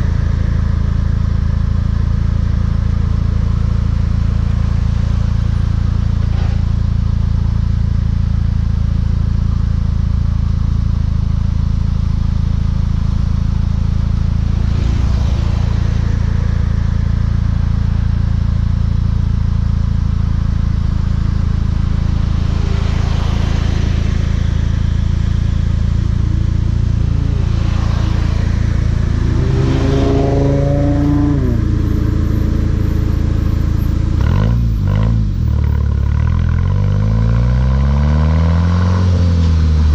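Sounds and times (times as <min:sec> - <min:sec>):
car engine revving and shifting: 0:14.1 - 0:18.7, 0:21.0 - 0:39.9.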